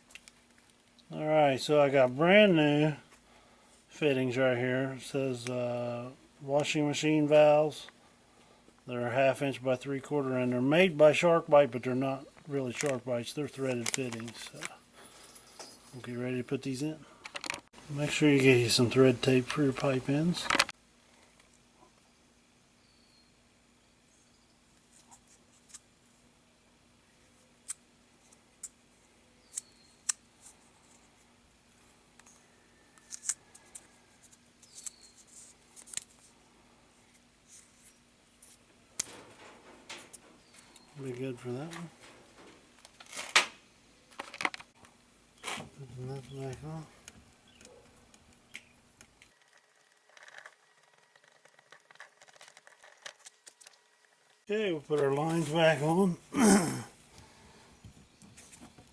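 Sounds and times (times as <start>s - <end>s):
faint steady hum: 0.0s - 49.4s
thread tape ticking and crinkling: 13.6s - 16.0s, 32.2s - 36.4s, 37.0s - 55.5s.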